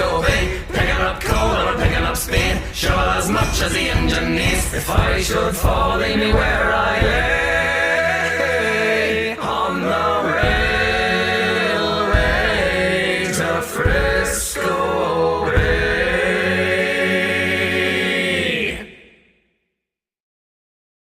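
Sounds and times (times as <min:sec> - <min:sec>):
low thumps: 0:00.0 - 0:08.6
men's vocal group singing: 0:00.0 - 0:19.2.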